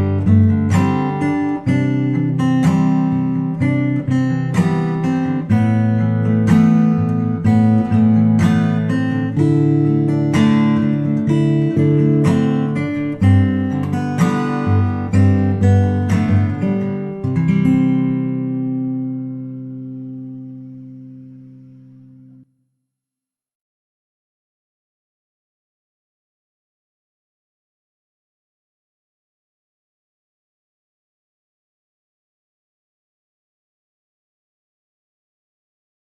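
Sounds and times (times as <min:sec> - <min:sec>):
acoustic guitar strumming chords: 0:00.0 - 0:22.4.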